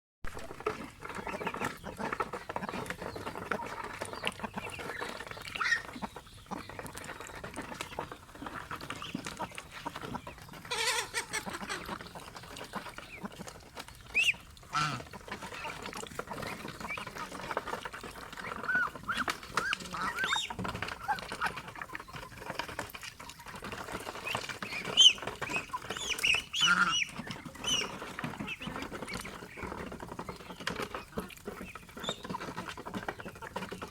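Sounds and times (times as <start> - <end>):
ducks calling: 0.5 - 33.9
geese honking: 14.1 - 22.0, 24.4 - 29.2.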